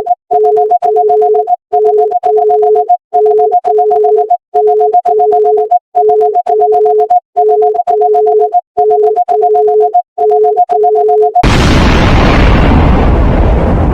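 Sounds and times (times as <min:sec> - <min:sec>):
emergency alert alarm tones: 0:00.0 - 0:11.5
burst of loud noise: 0:11.4 - 0:13.9.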